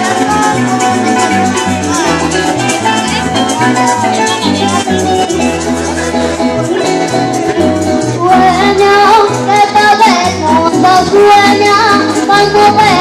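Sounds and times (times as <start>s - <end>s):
folk band playing: 0.0s - 13.0s
girl singing long notes: 8.2s - 13.0s.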